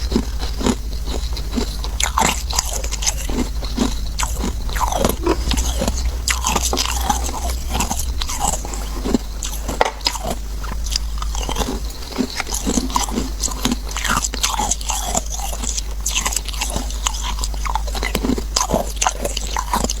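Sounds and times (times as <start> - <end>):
ice crunching between teeth: 0.0 - 20.0.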